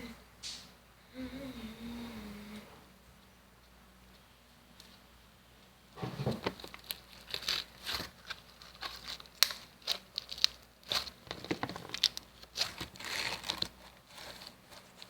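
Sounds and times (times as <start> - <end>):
slime crackling and popping: 6.5 - 14.2.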